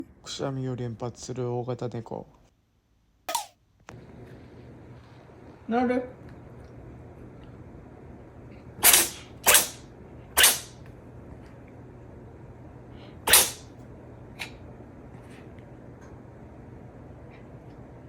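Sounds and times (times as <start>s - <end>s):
cat sneezing: 8.8s - 9.8s, 10.4s - 10.8s, 13.2s - 13.7s.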